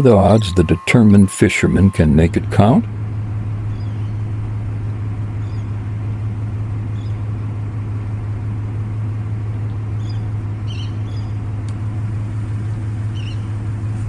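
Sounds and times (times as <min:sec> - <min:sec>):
faint high chirps: 0:00.0 - 0:02.5
road traffic rumble: 0:00.0 - 0:14.0.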